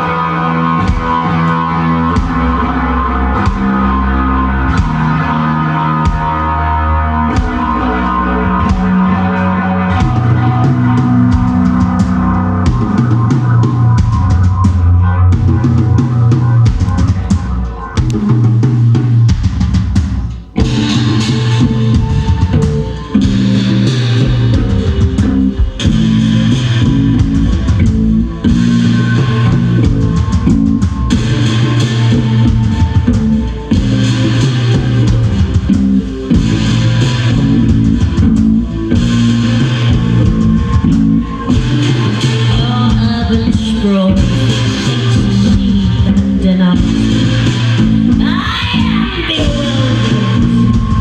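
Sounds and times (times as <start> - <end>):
live band playing instrumental: 15.4 - 51.0.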